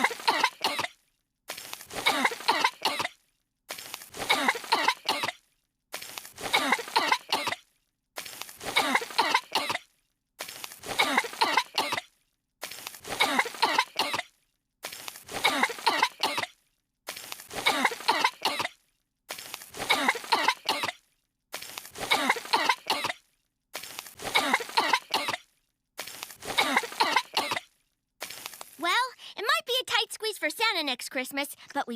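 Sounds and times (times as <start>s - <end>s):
cartoon girls coughing: 0.0s - 1.0s, 2.0s - 3.2s, 4.2s - 5.4s, 6.4s - 7.6s, 8.6s - 9.8s, 10.9s - 12.1s, 13.1s - 14.3s, 15.3s - 16.5s, 17.6s - 18.8s, 19.8s - 21.0s, 22.0s - 23.2s, 24.2s - 25.4s, 26.4s - 27.7s.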